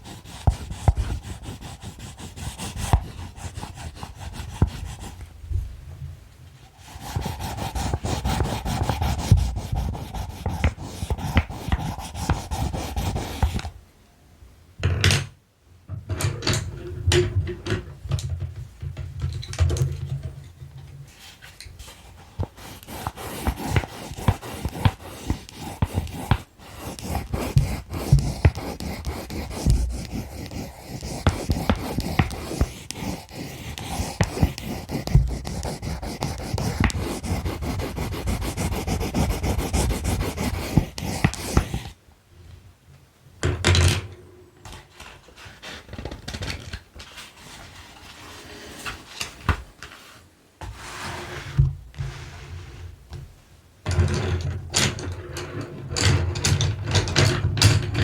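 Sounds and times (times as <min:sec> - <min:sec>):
pencils scratching and scraping: 0:00.0 - 0:05.2, 0:06.6 - 0:13.7, 0:21.1 - 0:42.0, 0:44.9 - 0:52.8
pencils tapping and clicking: 0:00.0 - 0:05.2, 0:06.9 - 0:13.7, 0:21.6 - 0:42.0.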